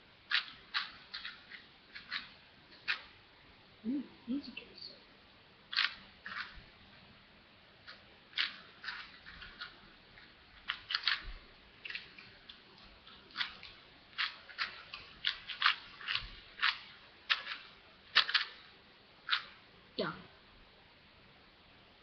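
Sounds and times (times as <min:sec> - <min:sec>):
plastic puzzle cube clicking: 0:00.3 - 0:03.1, 0:05.7 - 0:06.6, 0:07.8 - 0:19.6.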